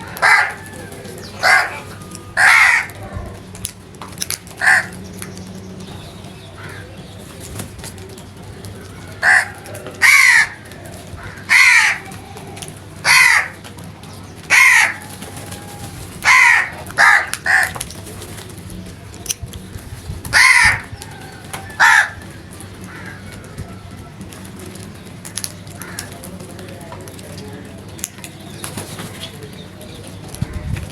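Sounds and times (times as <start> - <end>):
crows cawing: 0.0 - 3.5, 4.3 - 5.2, 6.4 - 7.1, 8.7 - 13.8, 14.5 - 17.9, 20.3 - 24.1, 25.7 - 26.2.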